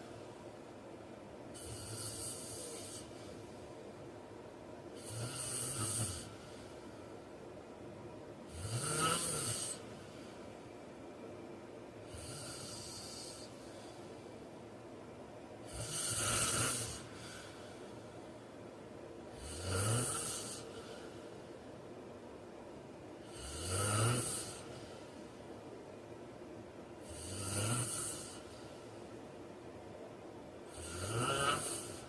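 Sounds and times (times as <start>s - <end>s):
man snoring: 1.6s - 3.4s, 5.0s - 6.8s, 8.5s - 10.0s, 12.0s - 13.9s, 15.6s - 17.6s, 19.3s - 21.1s, 23.2s - 25.0s, 27.0s - 28.6s, 30.7s - 32.0s.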